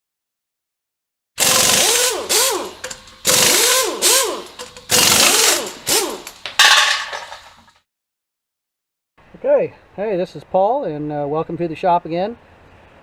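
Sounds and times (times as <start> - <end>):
power tool whining in bursts: 1.4 - 6.6.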